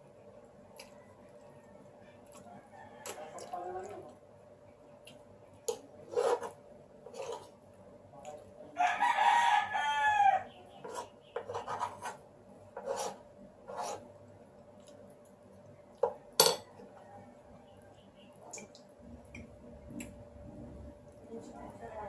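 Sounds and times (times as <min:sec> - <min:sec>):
person chewing food: 0:00.6 - 0:03.6, 0:14.0 - 0:17.0
rooster crowing: 0:00.9 - 0:03.5, 0:08.8 - 0:10.5.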